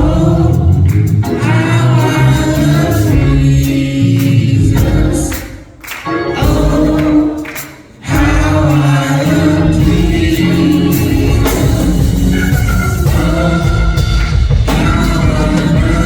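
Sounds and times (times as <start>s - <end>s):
choir singing gospel: 0.0s - 16.0s.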